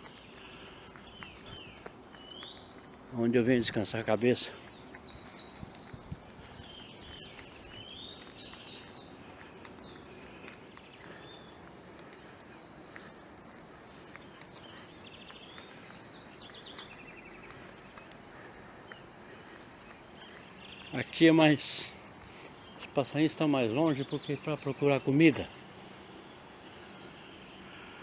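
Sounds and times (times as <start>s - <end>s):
songbirds chirping: 0.0s - 28.0s.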